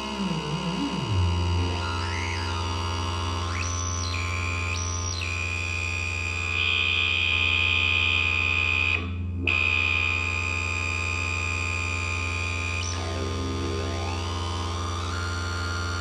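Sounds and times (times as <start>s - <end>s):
low synth drone: 0.0s - 5.6s
synth high buzzing tone: 0.0s - 16.0s.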